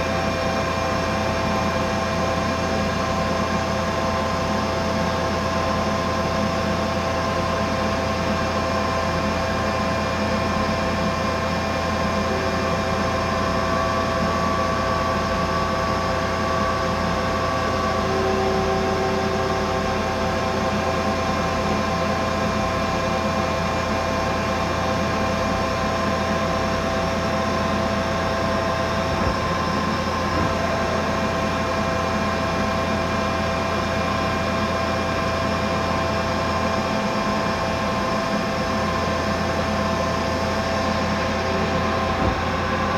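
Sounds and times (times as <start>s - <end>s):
machine hum: 25.4s - 33.7s.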